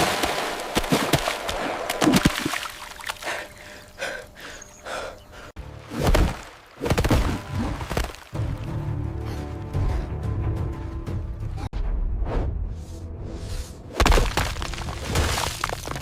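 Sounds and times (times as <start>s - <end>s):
cinematic background music: 5.6s - 14.0s.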